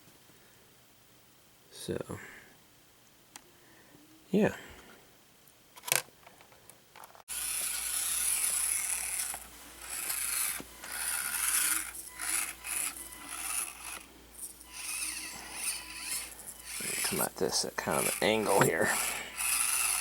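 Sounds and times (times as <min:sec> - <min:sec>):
small electric motor whirring: 0:07.3 - 0:20.0.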